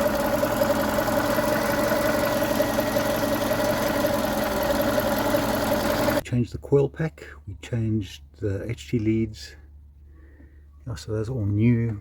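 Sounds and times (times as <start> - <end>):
car engine idling: 0.0 - 6.2.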